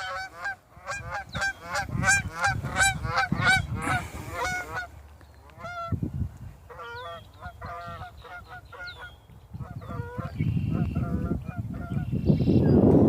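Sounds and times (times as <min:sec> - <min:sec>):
geese honking: 0:00.0 - 0:06.0, 0:06.7 - 0:12.1.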